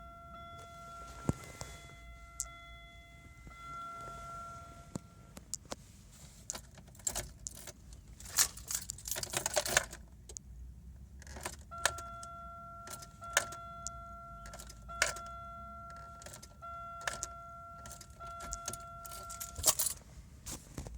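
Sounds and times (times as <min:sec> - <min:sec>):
high warning tone: 0:00.0 - 0:05.7, 0:11.6 - 0:20.0
car keys jangling in ignition: 0:06.4 - 0:10.4, 0:11.2 - 0:20.1.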